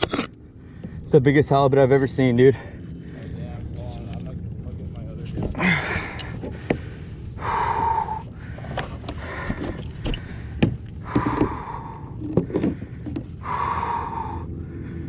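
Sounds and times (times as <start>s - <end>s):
heavy breathing: 5.4s - 15.0s.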